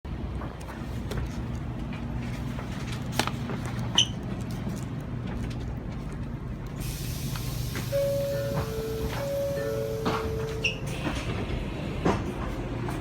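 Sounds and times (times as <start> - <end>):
train rumble and hum: 0.1 - 13.0
hiss: 6.8 - 8.0.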